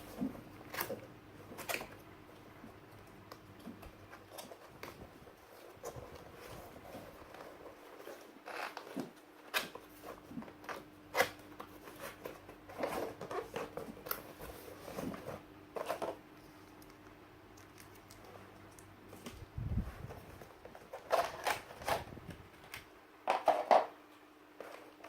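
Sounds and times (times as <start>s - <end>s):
packaging rustling and tearing: 20.1s - 22.7s.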